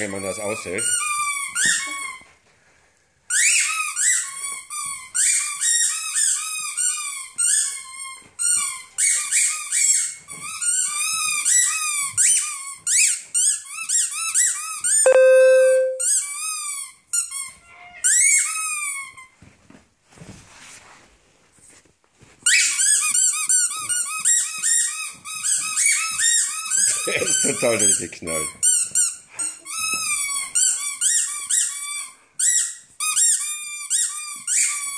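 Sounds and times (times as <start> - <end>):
squeaky dog toy squeaking: 3.3 - 19.2.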